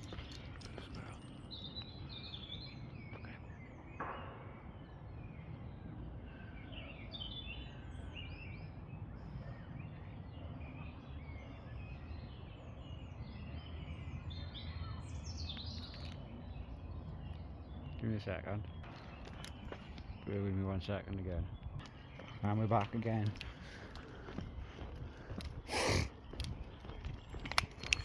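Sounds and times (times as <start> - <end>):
small birds chirping: 0.0 - 28.0
steady low rumble: 21.2 - 28.0.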